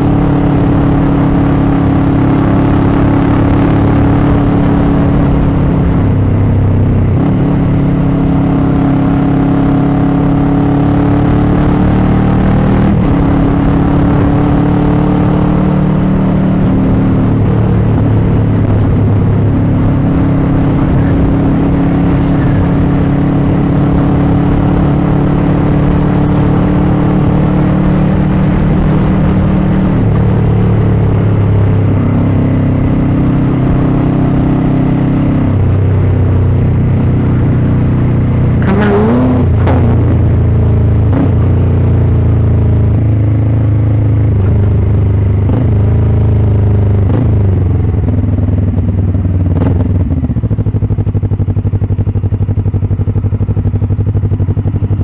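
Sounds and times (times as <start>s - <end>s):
motorcycle engine running: 12.4s - 55.0s.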